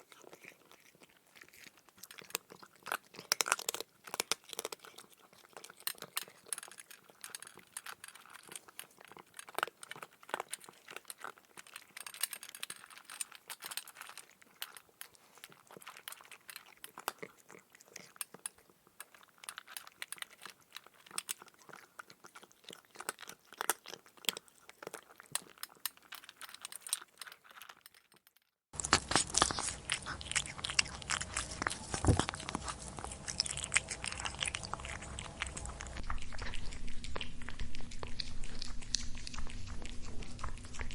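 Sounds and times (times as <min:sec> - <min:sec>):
cat chewing and crunching food: 0:00.0 - 0:40.9
low steady hum: 0:28.8 - 0:40.9.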